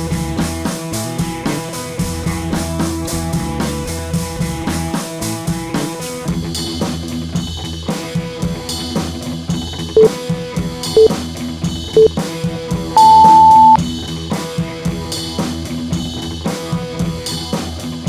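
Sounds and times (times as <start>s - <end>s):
upbeat drum and guitar music: 0.0s - 18.0s
loud electronic beeps: 13.0s - 13.8s.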